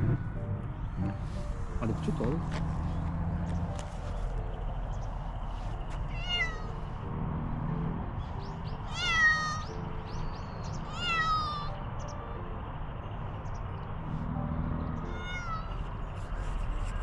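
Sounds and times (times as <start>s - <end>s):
cat meowing: 6.1s - 6.9s, 8.9s - 9.7s, 10.8s - 11.7s, 14.9s - 15.9s.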